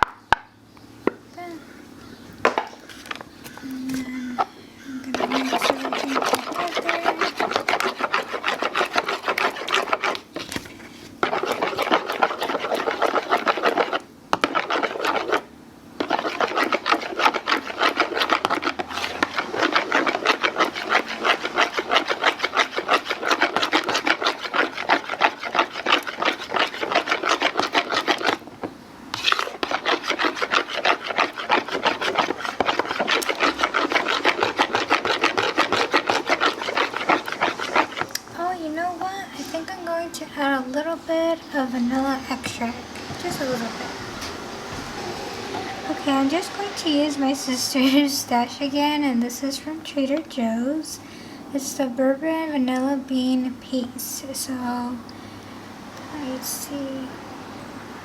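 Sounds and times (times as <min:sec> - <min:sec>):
utensil scraping batter in bowl: 0:05.0 - 0:38.4, 0:39.4 - 0:39.8, 0:41.4 - 0:51.0.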